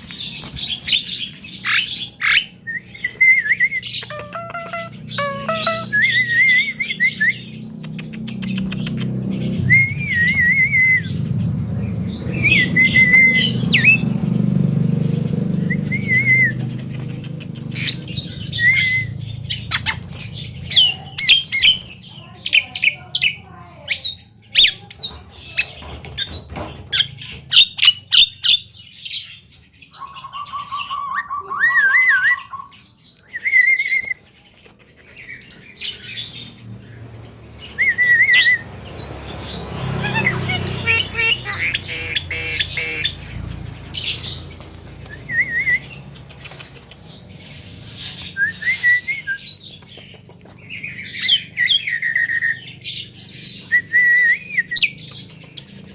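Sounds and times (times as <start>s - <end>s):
myna calling: 3.9s - 7.2s, 39.8s - 44.5s.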